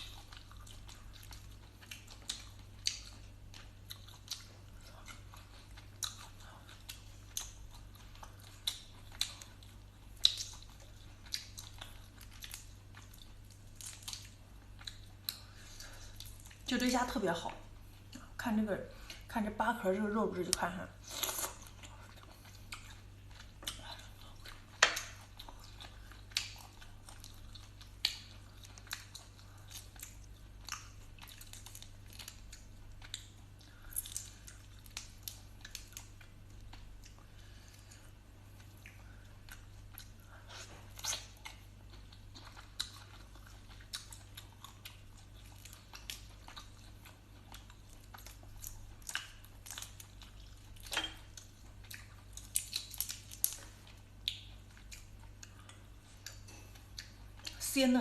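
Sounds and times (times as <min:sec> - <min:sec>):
faint low hum: 0:00.0 - 0:58.0
biting and chewing: 0:21.0 - 0:57.6.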